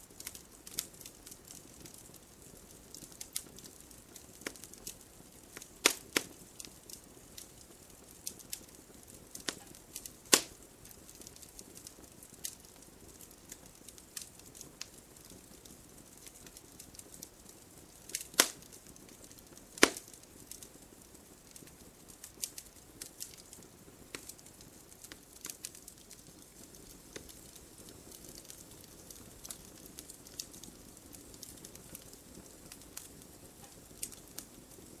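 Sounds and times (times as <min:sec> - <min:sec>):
campfire crackling: 0:00.0 - 0:35.0
sharp loud pops: 0:19.8 - 0:20.0.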